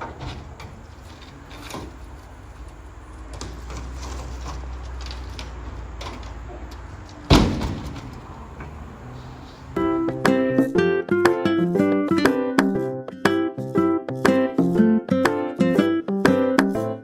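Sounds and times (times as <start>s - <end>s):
small knocks: 0.0s - 10.3s
loud slam: 7.2s - 10.2s.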